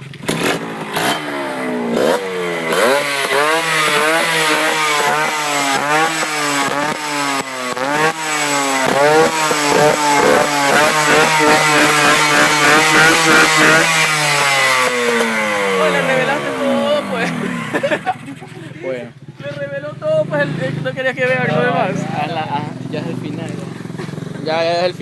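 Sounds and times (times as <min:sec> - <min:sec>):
two-stroke motorcycle engine revving: 0:00.0 - 0:25.0
low engine drone: 0:00.4 - 0:18.8.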